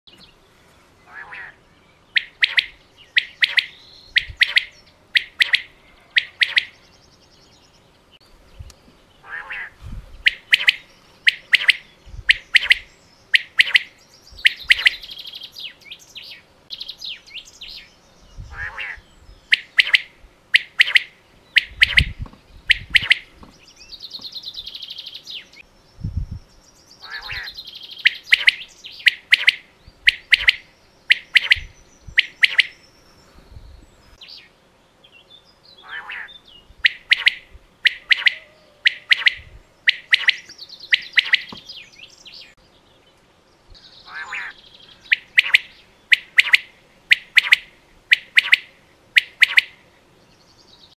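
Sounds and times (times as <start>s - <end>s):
quail calling: 1.1s - 1.6s, 2.2s - 6.8s, 9.2s - 15.4s, 18.5s - 23.4s, 27.0s - 32.7s, 35.8s - 41.6s, 44.0s - 49.8s.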